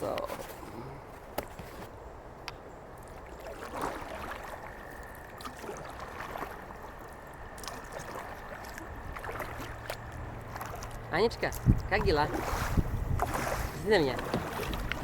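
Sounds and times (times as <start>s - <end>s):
river water gurgling and splashing: 2.2s - 15.0s
short paddle splashes: 3.2s - 4.8s, 5.4s - 6.6s, 7.6s - 15.0s.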